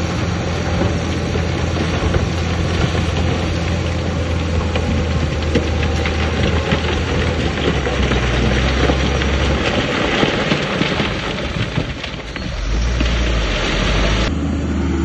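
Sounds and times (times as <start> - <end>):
stone fill crackling and rattling: 0.0 - 14.3
heavy diesel machine running: 0.0 - 15.0.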